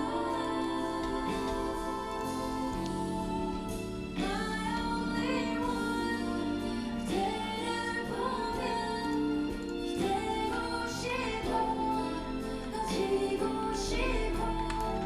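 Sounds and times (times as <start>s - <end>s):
instrumental backing: 0.0s - 15.0s
person singing: 0.0s - 15.0s.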